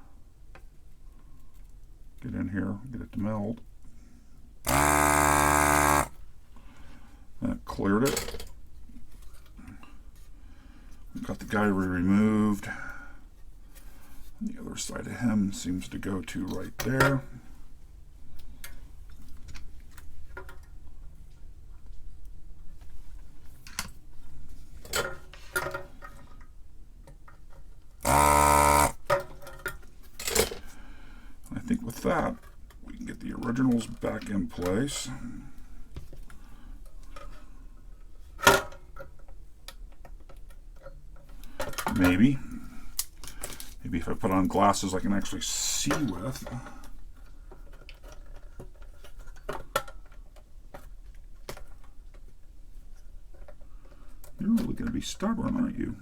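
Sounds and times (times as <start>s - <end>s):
desoldering pump buzzing: 4.7s - 6.2s, 28.0s - 29.0s.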